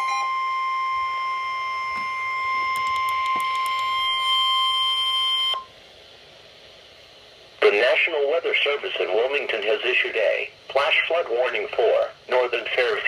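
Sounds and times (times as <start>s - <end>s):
steady alarm tone: 0.0s - 5.7s
faint hiss: 5.6s - 13.0s.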